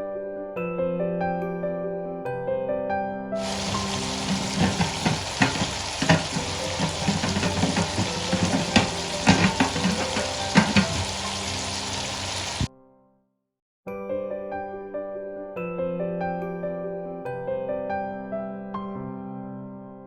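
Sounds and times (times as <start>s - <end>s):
meat sizzling in a pot: 3.4s - 12.7s
spoon knocking against pot: 3.4s - 12.7s.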